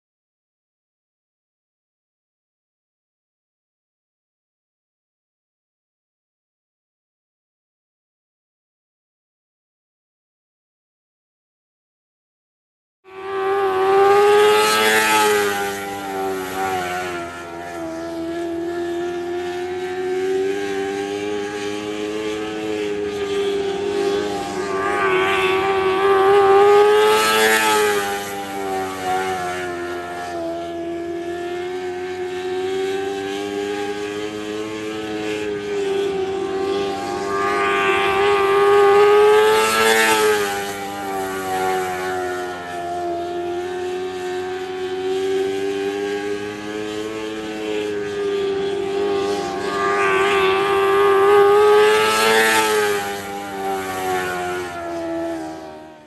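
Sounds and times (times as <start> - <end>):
race car engine passing: 13.1 - 56.0.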